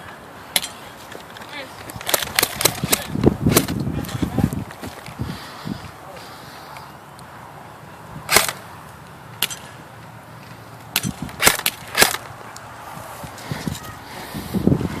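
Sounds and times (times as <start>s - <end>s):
airsoft guns firing: 8.3s - 8.6s, 10.9s - 12.3s.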